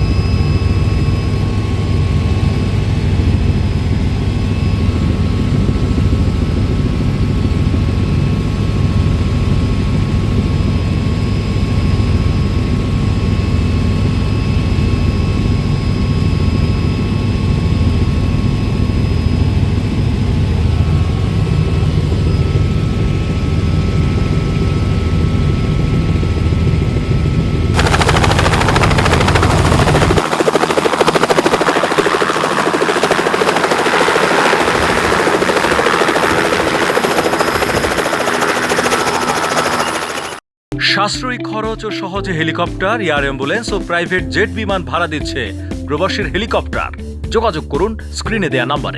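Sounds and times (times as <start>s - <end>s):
helicopter rotor beat: 0.0s - 40.4s
hissing rush: 27.8s - 40.4s
turbine whine: 27.8s - 40.4s.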